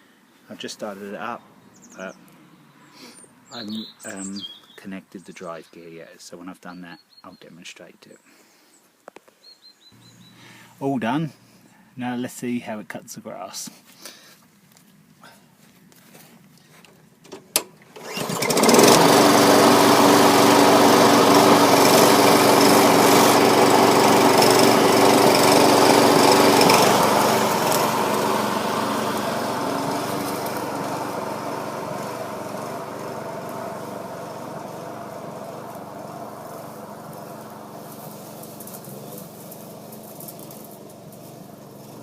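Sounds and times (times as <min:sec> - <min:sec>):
lawnmower engine running: 0:17.5 - 0:42.0.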